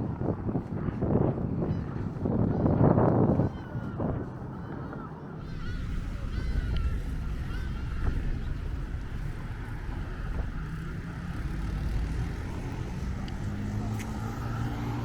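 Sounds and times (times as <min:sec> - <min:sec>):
road traffic rumble: 0:05.4 - 0:15.0.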